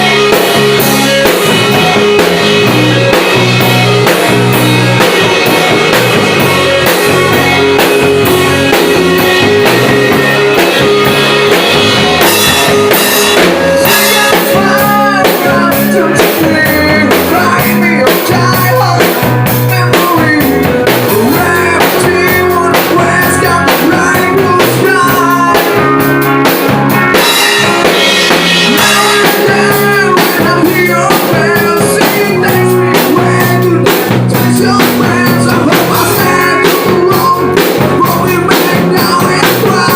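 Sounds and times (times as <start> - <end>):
lead guitar bending pitch: 0.0 - 15.9, 25.8 - 30.1
drum kit beats: 0.0 - 39.9
rock band playing: 0.0 - 39.9.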